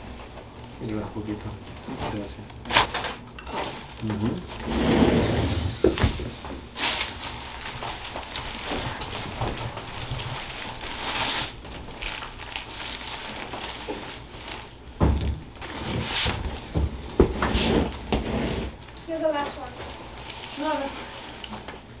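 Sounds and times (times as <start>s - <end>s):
rustling and handling noises: 0.0s - 22.0s
loud low thump: 5.2s - 6.4s.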